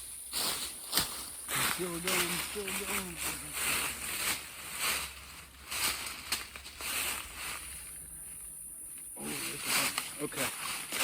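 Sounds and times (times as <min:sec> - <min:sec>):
leaves and branches rustling: 0:00.0 - 0:11.0
branches snapping: 0:05.7 - 0:07.2.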